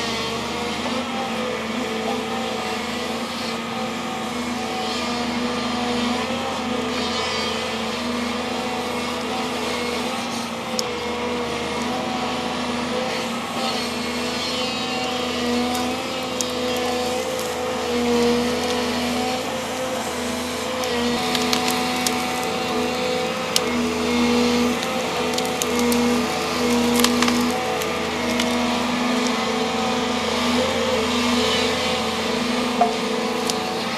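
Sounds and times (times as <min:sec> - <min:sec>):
excavator diesel engine running: 0:07.7 - 0:33.9
tree roots cracking and snapping: 0:15.0 - 0:17.6, 0:20.8 - 0:29.5.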